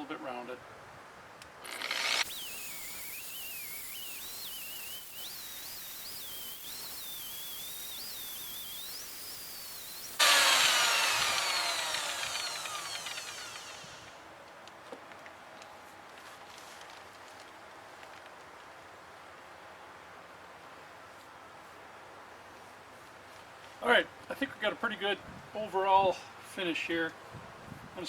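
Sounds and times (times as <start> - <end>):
grinder whining: 1.6 - 14.2
wheel winding down: 1.6 - 14.2.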